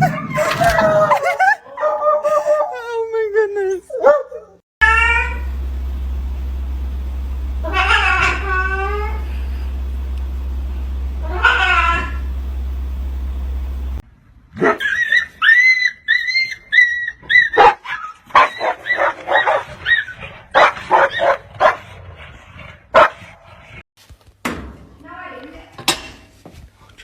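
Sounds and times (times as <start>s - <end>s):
low steady hum: 4.8s - 14.0s.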